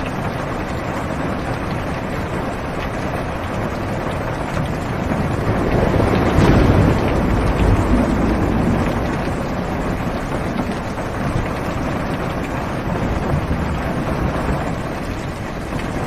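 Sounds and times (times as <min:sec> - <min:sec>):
heavy rain on car roof: 0:00.0 - 0:16.0
rumble of thunder: 0:03.7 - 0:16.0.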